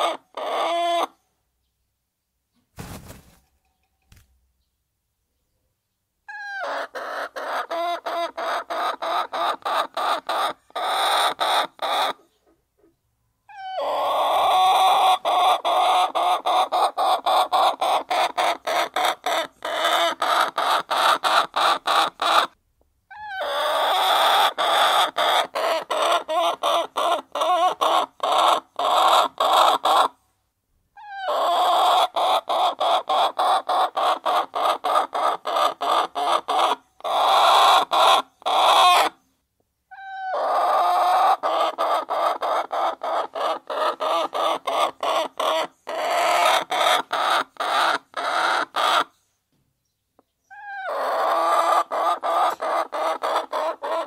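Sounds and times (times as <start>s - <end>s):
hens clucking: 0.0s - 1.2s, 6.3s - 22.6s, 23.2s - 30.2s, 31.1s - 39.2s, 39.9s - 49.1s, 50.6s - 54.0s.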